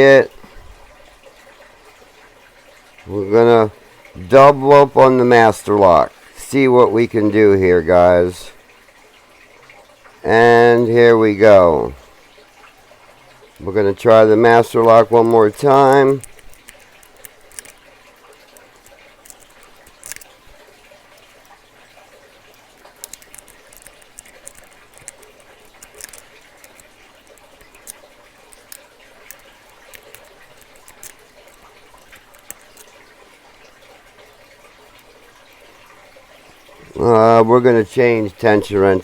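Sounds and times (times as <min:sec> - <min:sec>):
lock pick clicks and scratches: 0:14.8 - 0:20.3, 0:22.8 - 0:33.0.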